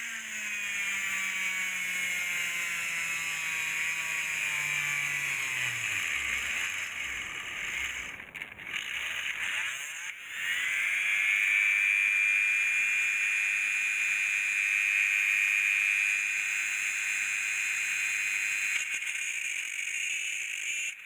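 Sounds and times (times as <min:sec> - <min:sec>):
small electric motor whining: 0:00.0 - 0:21.0.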